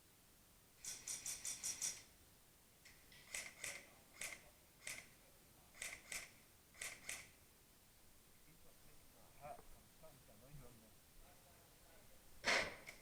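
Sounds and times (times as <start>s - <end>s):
airsoft gun shots: 12.4s - 13.0s.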